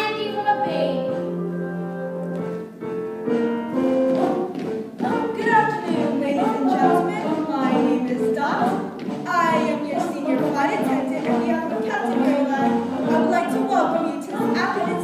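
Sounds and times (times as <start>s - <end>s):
instrumental accompaniment: 0.0s - 15.0s
young cast singing: 5.0s - 15.0s.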